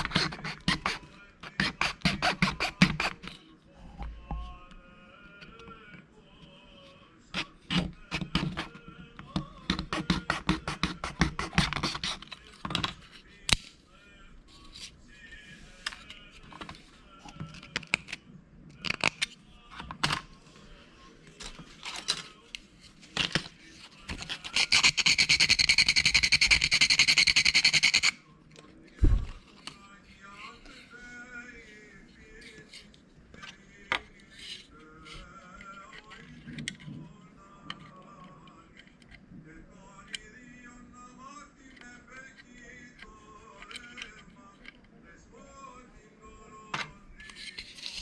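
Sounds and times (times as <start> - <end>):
plastic parts clicking and scraping: 15.8 - 20.3, 21.3 - 25.0, 32.5 - 39.2, 43.6 - 44.9.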